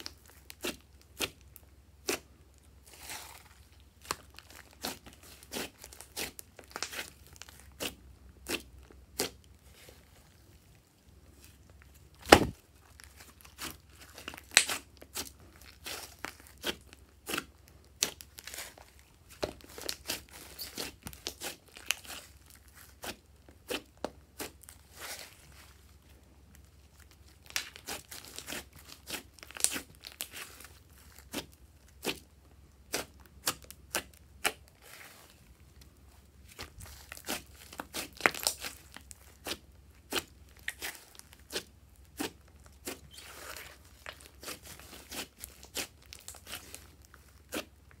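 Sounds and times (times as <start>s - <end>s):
slime popping and crackling: 2.9s - 9.4s, 12.1s - 25.5s, 26.9s - 35.3s, 36.4s - 48.0s.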